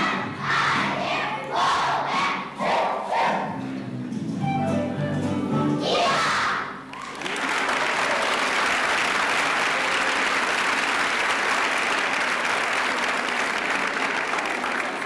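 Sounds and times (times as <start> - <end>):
music: 0.0 - 7.0
audience applauding: 6.9 - 15.0.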